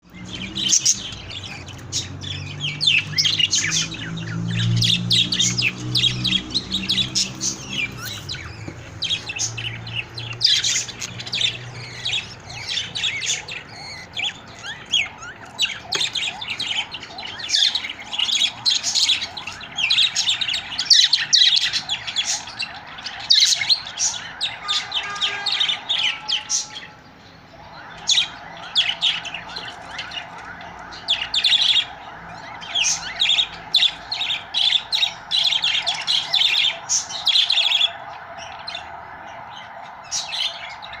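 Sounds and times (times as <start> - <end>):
budgerigars chirping and squawking: 0.0 - 41.0.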